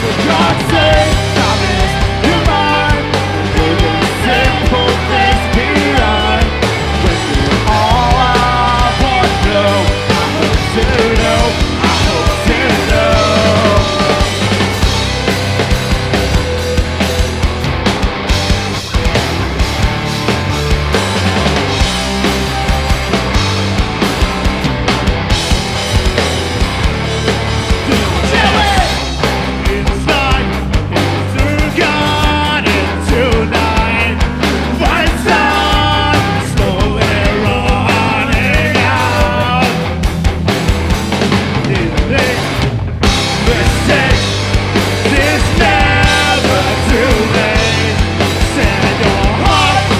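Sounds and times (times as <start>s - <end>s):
person singing: 0.0s - 14.7s, 27.8s - 30.6s, 31.3s - 39.8s, 45.0s - 49.9s
drum beat: 0.0s - 49.9s
rock band playing live: 0.0s - 49.9s.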